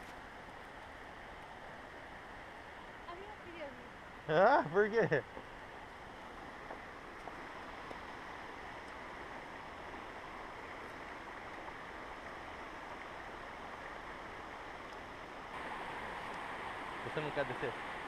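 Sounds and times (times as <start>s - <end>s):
waterfall rushing: 15.6s - 18.0s.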